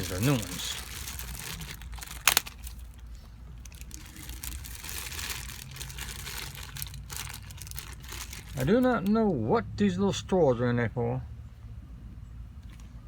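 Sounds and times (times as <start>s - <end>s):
plastic packaging crinkling: 0.0s - 9.1s.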